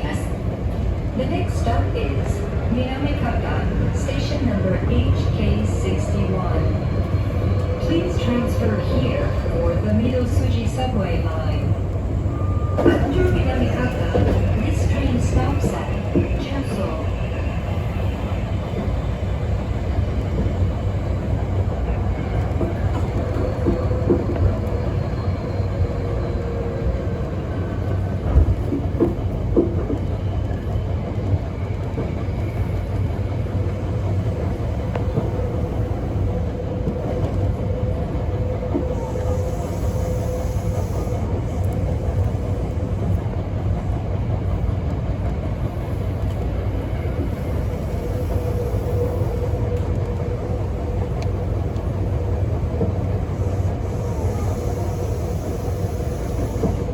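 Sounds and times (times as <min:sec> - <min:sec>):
wheels rumbling on track: 0:00.0 - 0:56.9
train motor whine: 0:47.0 - 0:56.9.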